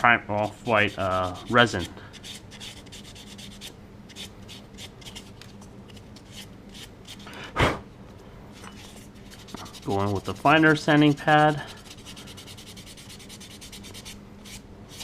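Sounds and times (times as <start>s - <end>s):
sanding pad rubbing on plastic: 0.6s - 5.2s, 9.3s - 15.0s.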